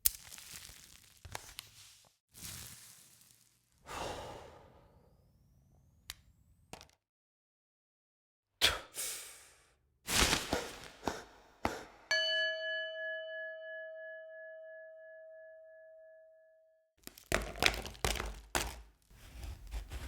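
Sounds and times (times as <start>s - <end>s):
struck metal ringing: 12.1s - 16.8s.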